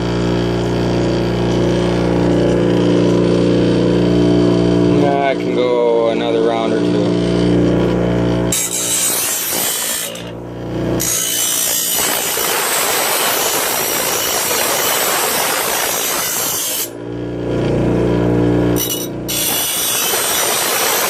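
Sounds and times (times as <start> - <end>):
grinder motor hum: 0.0 - 21.0
bench grinder grinding steel: 6.6 - 21.0.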